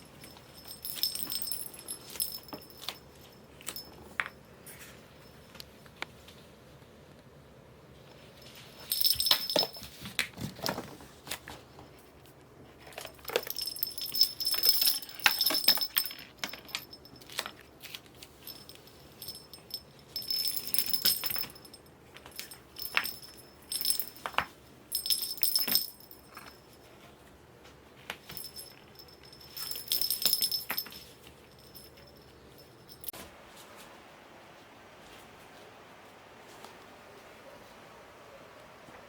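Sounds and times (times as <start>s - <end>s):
small bell jingling: 0.0s - 5.6s, 8.1s - 10.0s, 12.9s - 17.6s, 18.2s - 26.9s, 28.2s - 33.1s.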